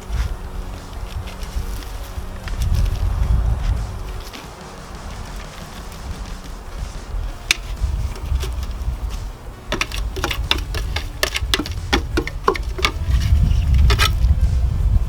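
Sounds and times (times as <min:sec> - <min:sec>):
sharp clicks and knocks: 0:07.4 - 0:14.3.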